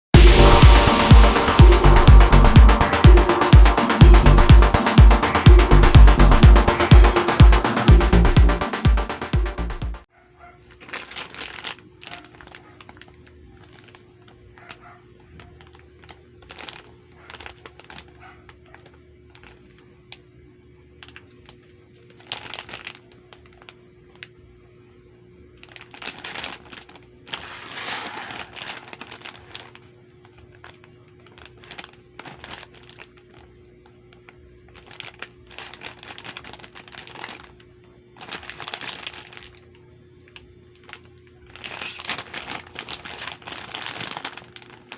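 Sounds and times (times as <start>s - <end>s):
candy wrappers crinkling: 10.7s - 20.2s, 20.9s - 24.3s, 25.5s - 44.9s.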